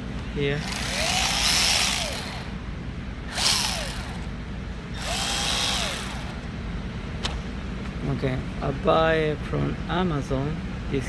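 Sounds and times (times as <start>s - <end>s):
cordless ratchet motor: 0.6s - 2.6s, 3.3s - 4.3s, 5.0s - 6.4s.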